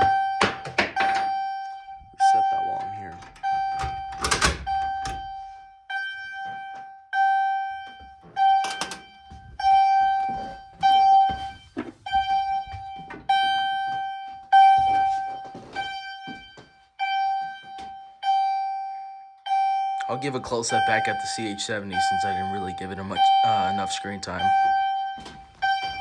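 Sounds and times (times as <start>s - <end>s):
sharp knocks: 0.0s - 1.4s
electronic fire alarm chime: 0.0s - 26.0s.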